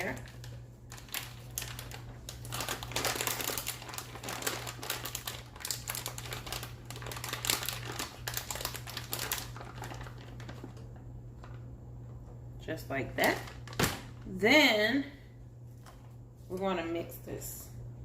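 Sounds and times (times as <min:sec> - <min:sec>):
crackling and crinkling: 0:00.0 - 0:12.4, 0:13.1 - 0:14.4
low electrical hum: 0:00.0 - 0:18.0.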